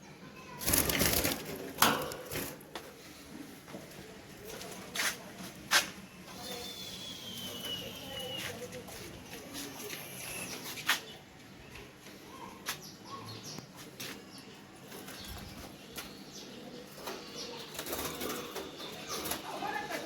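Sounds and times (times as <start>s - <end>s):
birds flapping wings: 0.6s - 2.6s.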